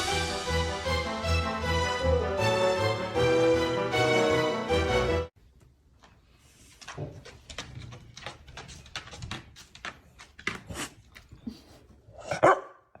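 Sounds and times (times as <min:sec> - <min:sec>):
dog clicking and scuffling: 0:05.6 - 0:11.8.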